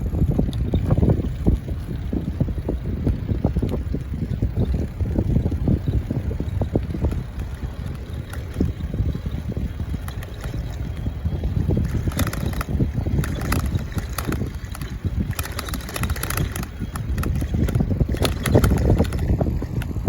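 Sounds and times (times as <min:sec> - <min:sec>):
wind buffeting microphone: 0:00.0 - 0:20.0
faint clicks: 0:09.9 - 0:11.0, 0:11.8 - 0:20.0.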